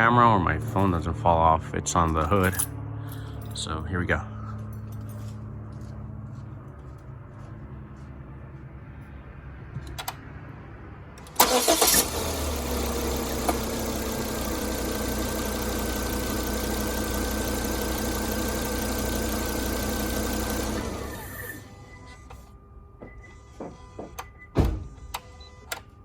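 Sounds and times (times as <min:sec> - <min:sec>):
car engine cranking and idling: 0:00.0 - 0:03.8, 0:11.2 - 0:21.7.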